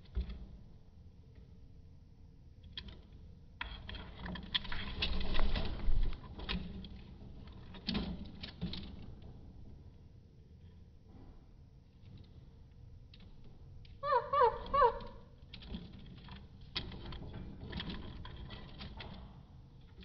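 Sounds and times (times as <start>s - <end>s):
birds rustling and clicking in cage: 2.7s - 9.8s, 15.5s - 20.0s.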